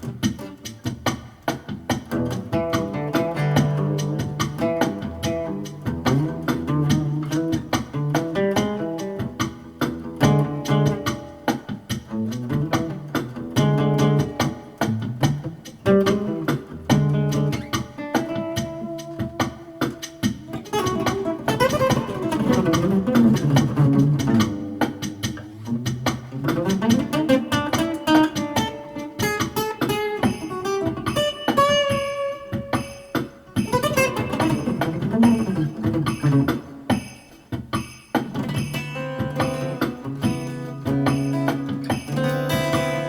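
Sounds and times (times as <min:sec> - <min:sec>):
plucked strings: 0:00.0 - 0:43.0.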